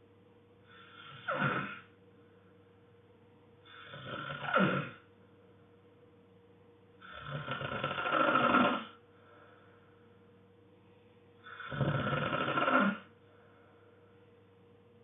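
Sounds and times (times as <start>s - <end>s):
person snoring: 0.8s - 1.9s, 3.7s - 5.0s, 7.0s - 9.0s, 11.4s - 13.1s.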